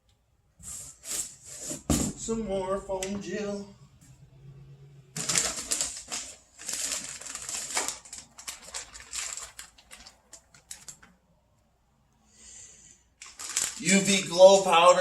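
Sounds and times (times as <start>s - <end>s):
packaging rustling and crinkling: 5.2s - 11.3s, 13.2s - 14.8s.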